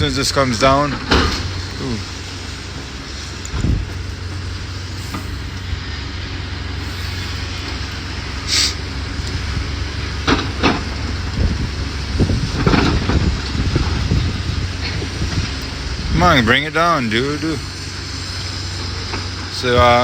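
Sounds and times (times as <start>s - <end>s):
excavator diesel engine running: 0.0s - 20.0s
knocks and clanks: 0.8s - 2.0s, 10.1s - 11.6s, 12.2s - 15.6s
short hiss: 1.3s - 6.0s, 6.7s - 8.9s.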